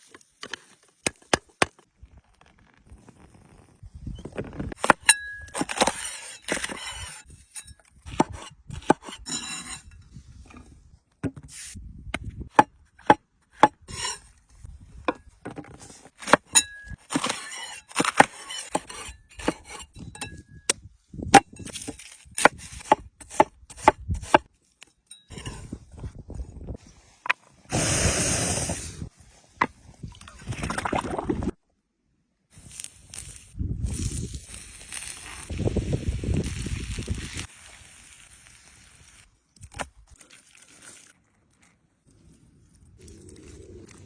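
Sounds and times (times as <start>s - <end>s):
loud burst of hiss: 27.7s - 29.0s.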